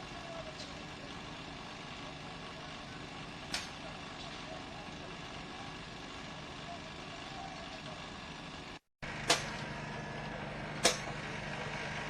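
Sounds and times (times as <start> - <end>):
faint distant voices: 0.0 - 8.4
heavy machinery engine: 0.0 - 12.0.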